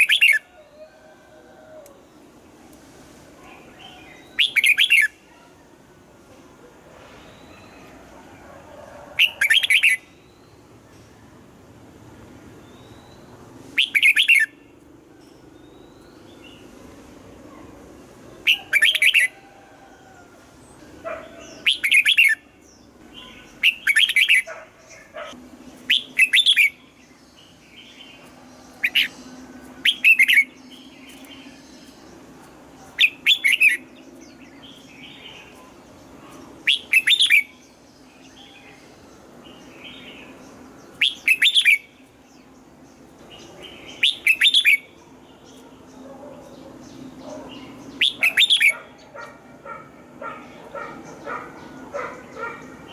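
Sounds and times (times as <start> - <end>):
bird singing whistled phrases: 36.7 - 37.5.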